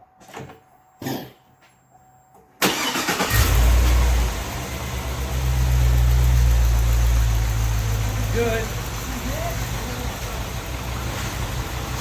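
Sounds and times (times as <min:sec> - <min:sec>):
car engine starting and idling: 0:02.6 - 0:12.0.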